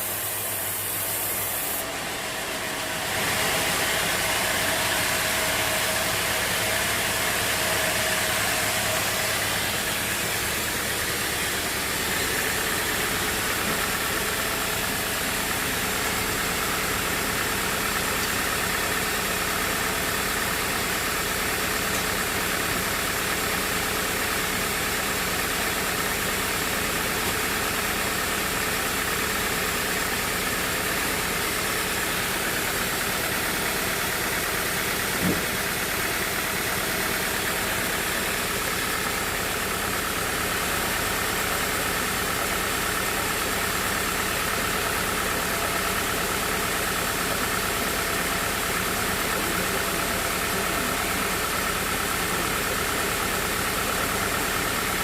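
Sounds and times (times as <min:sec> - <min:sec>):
sawmill machinery running: 0:00.0 - 0:55.0
brief knock: 0:35.2 - 0:35.5.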